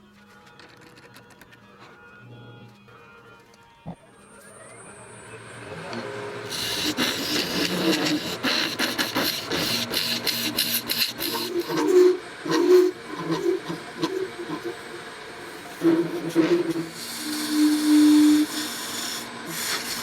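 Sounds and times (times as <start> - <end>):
lathe tool scraping resin: 5.5 - 20.0.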